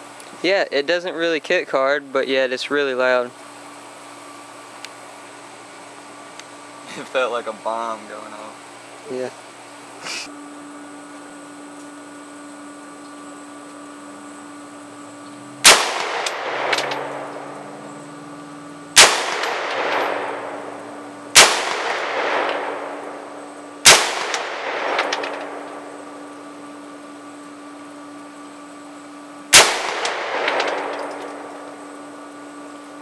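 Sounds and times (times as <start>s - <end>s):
gunshots with echo: 15.6s - 17.3s, 19.0s - 20.6s, 21.4s - 23.0s, 23.8s - 25.6s, 29.6s - 31.1s.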